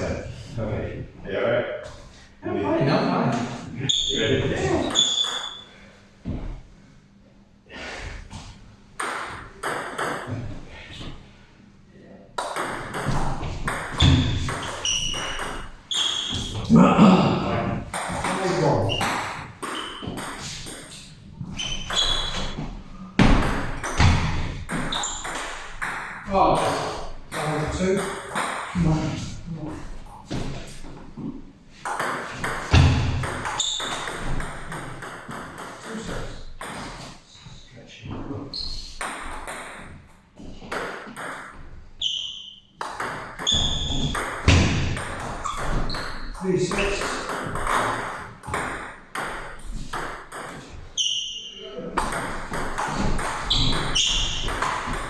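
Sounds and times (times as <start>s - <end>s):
table tennis ball pings: 4.9s - 5.7s, 9.0s - 10.3s, 12.4s - 16.6s, 17.9s - 21.0s, 23.3s - 28.8s, 31.8s - 36.9s, 52.0s - 55.0s.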